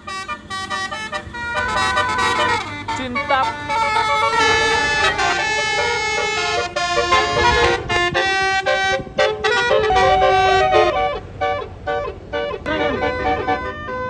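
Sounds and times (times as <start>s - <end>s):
bus horn playing a melody: 0.0s - 14.0s.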